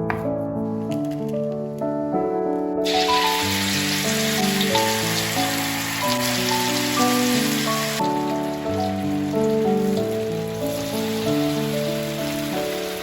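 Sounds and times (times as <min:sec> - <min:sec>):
piano music: 0:00.0 - 0:13.0
food sizzling in hot oil: 0:02.8 - 0:13.0.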